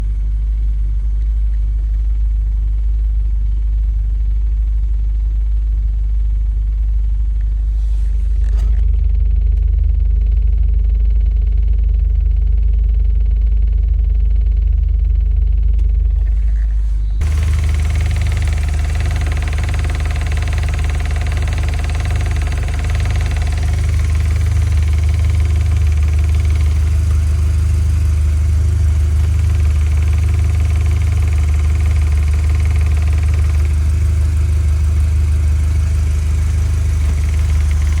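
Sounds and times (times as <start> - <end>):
car engine idling: 16.2 - 38.0.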